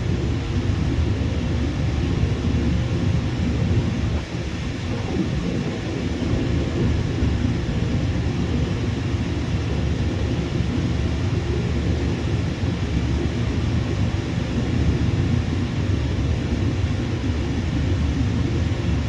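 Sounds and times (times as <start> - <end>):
jet engines rumbling: 0.0 - 19.0.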